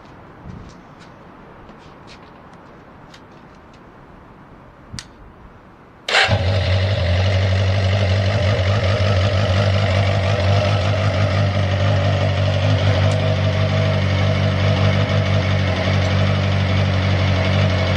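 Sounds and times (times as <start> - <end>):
motorcycle engine starting and idling: 6.1 - 17.9.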